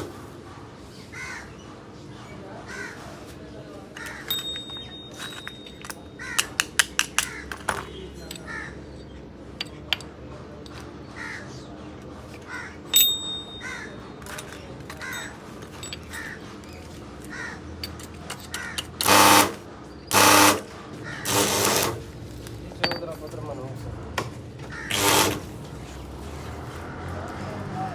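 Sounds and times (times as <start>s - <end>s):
crows cawing: 1.1s - 1.6s, 2.7s - 3.2s, 6.2s - 6.5s, 8.5s - 8.8s, 11.2s - 11.7s, 12.5s - 12.8s, 17.2s - 17.7s, 24.6s - 24.9s.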